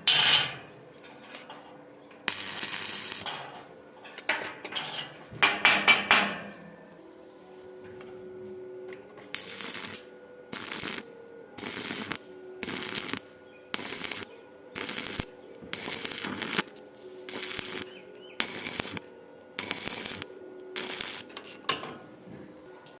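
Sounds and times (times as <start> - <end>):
welding arc crackling: 2.2 - 3.5, 9.2 - 21.8.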